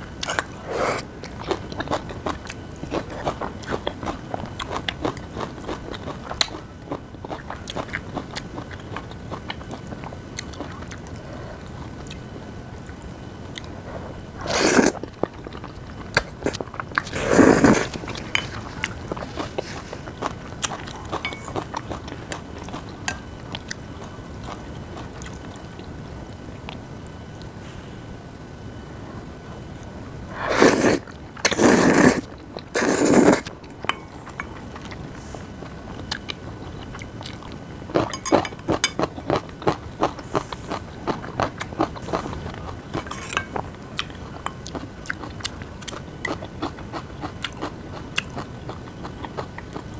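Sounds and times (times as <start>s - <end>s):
loud slurps: 0.6s - 1.1s, 14.4s - 15.0s, 16.4s - 20.1s, 30.3s - 33.5s
chewing with wet clicks: 1.2s - 13.8s, 14.8s - 25.9s, 31.4s - 49.9s
crisp crunching of cabbage: 14.4s - 23.0s, 30.5s - 33.5s.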